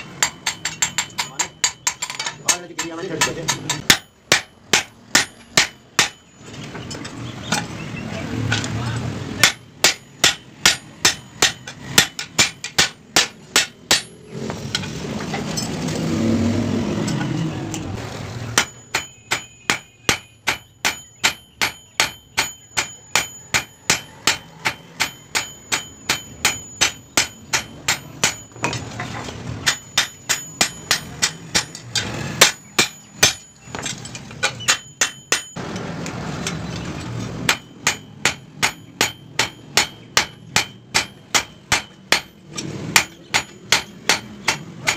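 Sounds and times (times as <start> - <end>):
hammer striking steel on anvil: 0.0 - 7.7, 9.3 - 15.9, 18.4 - 44.9.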